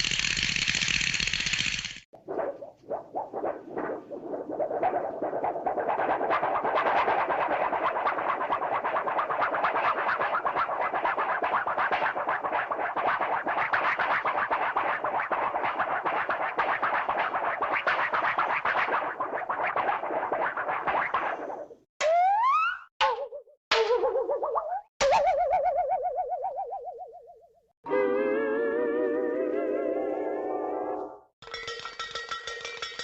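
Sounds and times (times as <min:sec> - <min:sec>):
rapid chattering clicks: 0:00.0 - 0:02.1.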